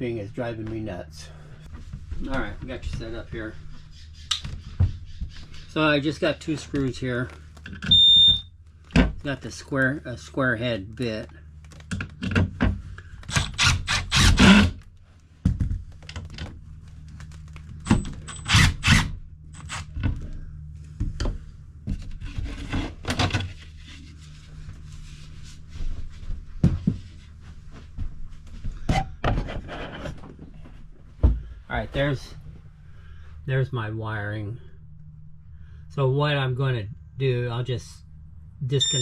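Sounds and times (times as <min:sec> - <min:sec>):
low steady hum: 0:00.0 - 0:39.0
knocks and scrapes of panel: 0:28.9 - 0:30.3.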